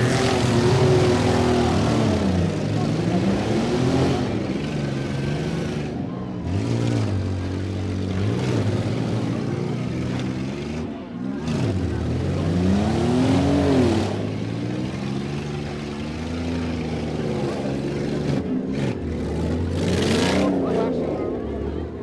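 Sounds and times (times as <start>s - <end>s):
vehicle engines revving: 0.0s - 22.0s.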